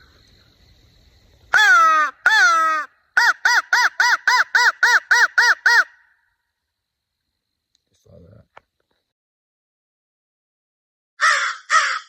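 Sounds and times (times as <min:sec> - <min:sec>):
crow call caws: 0:01.6 - 0:06.2, 0:11.2 - 0:12.0.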